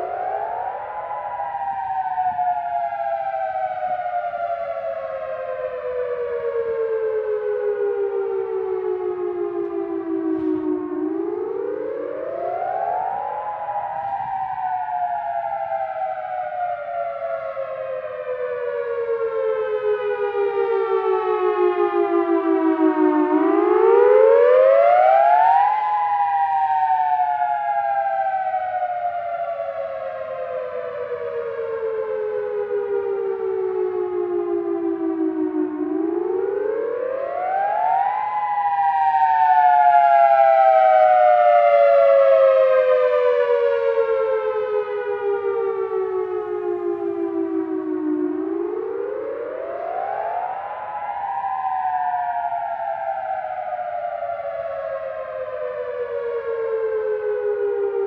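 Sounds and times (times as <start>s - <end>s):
warning siren wailing: 0.0s - 58.0s.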